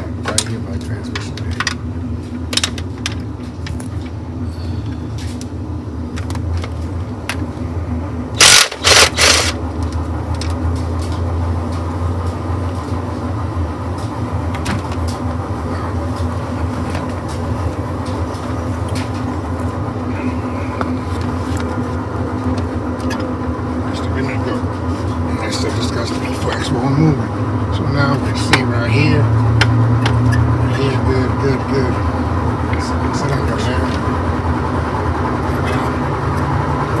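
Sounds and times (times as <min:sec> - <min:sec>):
low mechanical hum: 0:00.0 - 0:37.0
short loud noise bursts: 0:08.4 - 0:09.6.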